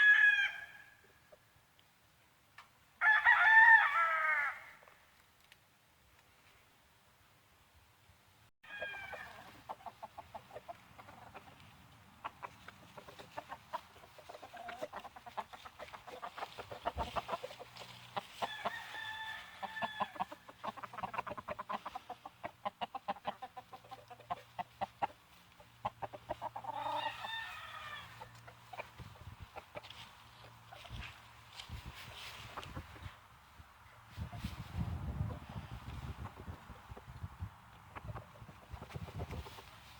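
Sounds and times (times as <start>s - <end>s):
roosters crowing: 0.0s - 1.0s, 3.0s - 4.8s, 8.6s - 10.2s, 16.1s - 21.4s, 26.3s - 28.6s
chickens clucking: 8.8s - 18.9s, 19.6s - 33.3s, 33.9s - 39.9s.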